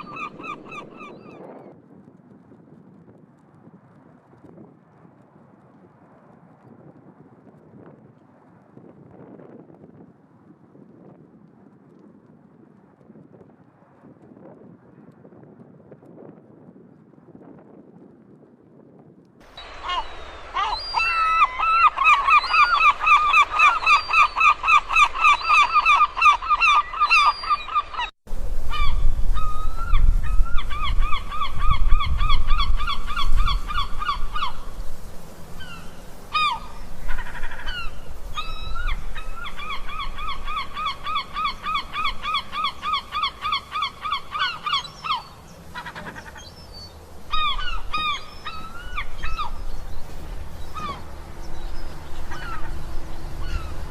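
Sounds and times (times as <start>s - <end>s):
seagulls calling: 0.0s - 1.6s, 19.5s - 28.1s, 28.7s - 53.9s.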